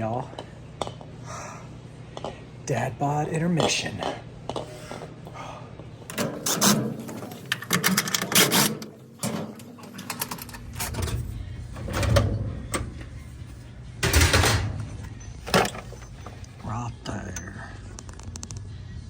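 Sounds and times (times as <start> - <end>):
tools and washers rattling: 6.1 - 17.8.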